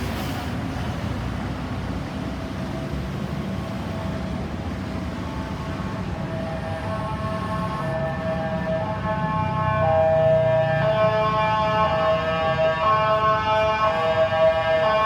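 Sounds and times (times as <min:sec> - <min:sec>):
road traffic rumble: 0:00.0 - 0:15.0
emergency vehicle siren: 0:02.4 - 0:15.0.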